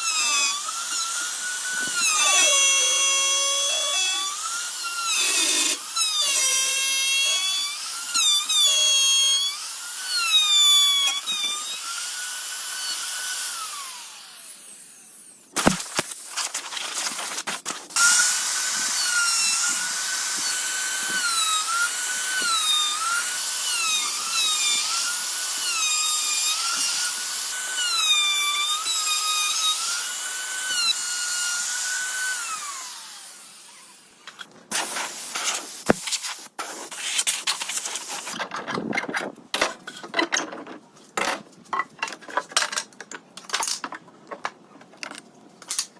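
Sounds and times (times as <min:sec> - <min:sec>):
electric drill whining into wood: 0:00.0 - 0:15.4, 0:18.0 - 0:34.4.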